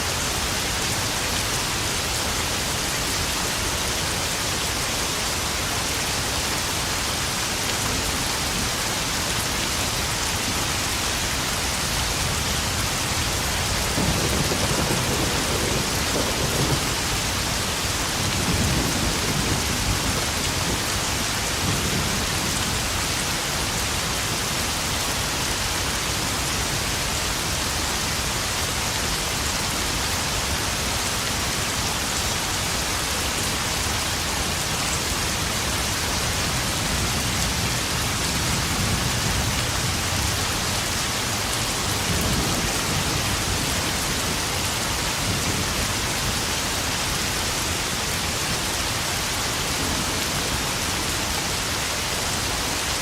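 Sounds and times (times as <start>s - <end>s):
rain pattering on puddles: 0.2s - 24.1s
thunder rumbling: 13.7s - 20.9s.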